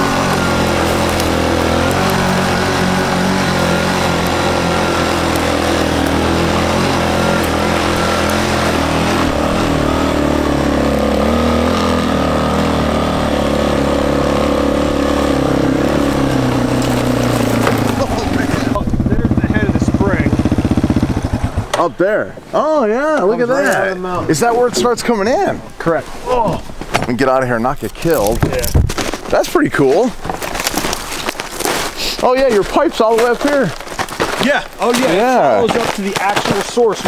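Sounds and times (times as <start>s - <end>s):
atv engine running: 0.0s - 21.9s, 32.9s - 37.0s.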